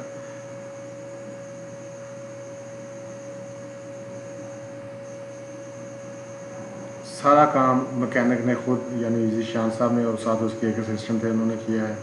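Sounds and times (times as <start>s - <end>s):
faint high whine: 0.0s - 12.0s
steady electrical hum: 0.0s - 12.0s.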